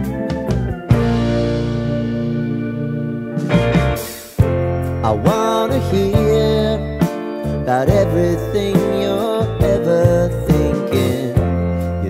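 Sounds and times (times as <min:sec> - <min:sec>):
pop song with held chord: 0:00.0 - 0:12.0.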